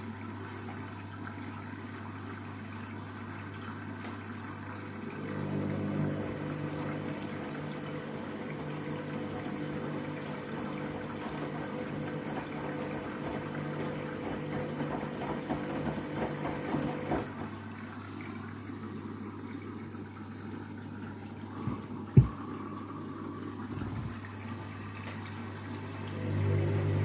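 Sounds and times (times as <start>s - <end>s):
drain pump humming: 0.0s - 27.0s
water gurgling: 0.0s - 27.0s.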